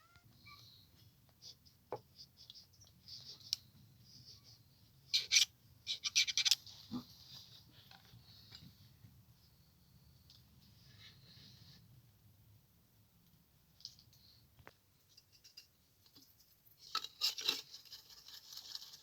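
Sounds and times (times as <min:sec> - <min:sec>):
scratching and scraping: 0:05.1 - 0:08.6, 0:15.1 - 0:19.0.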